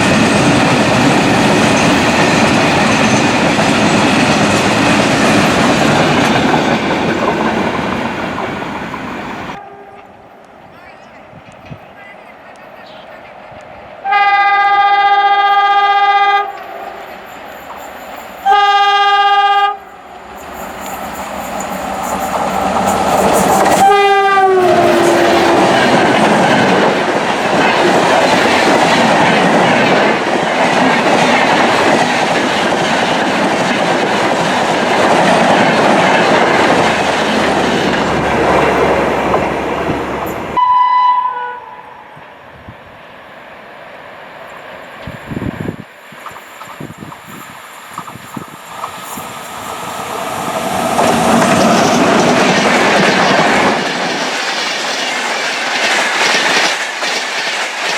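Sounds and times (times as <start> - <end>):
train wheels rattling over rails: 0.0 - 9.6, 16.4 - 40.6, 44.6 - 57.9
locomotive horn blasts: 9.6 - 10.1, 14.0 - 16.6, 18.4 - 19.8, 23.8 - 25.7, 40.6 - 42.1.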